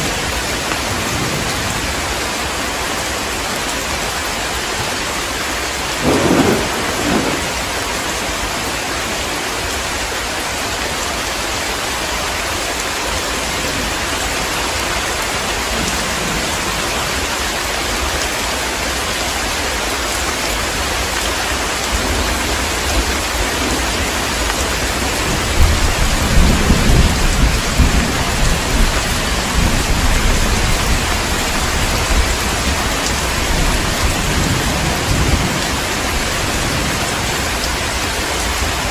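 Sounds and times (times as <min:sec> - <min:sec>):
heavy rain hissing: 0:00.0 - 0:38.9
rolling thunder rumble: 0:05.9 - 0:09.2, 0:21.9 - 0:38.9
thunder clap: 0:06.0 - 0:09.2, 0:22.0 - 0:38.9.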